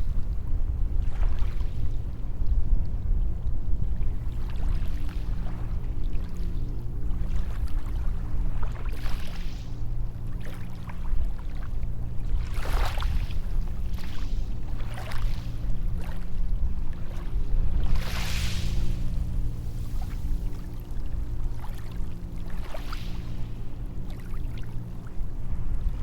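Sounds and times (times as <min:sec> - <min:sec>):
low surf rumble: 0:00.0 - 0:26.0
waves washing onto sand: 0:17.8 - 0:20.8.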